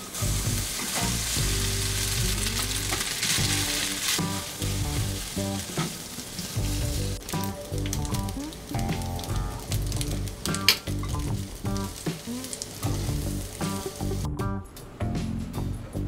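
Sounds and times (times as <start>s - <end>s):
food sizzling in a pan: 0.0s - 14.3s
background music: 0.0s - 16.0s.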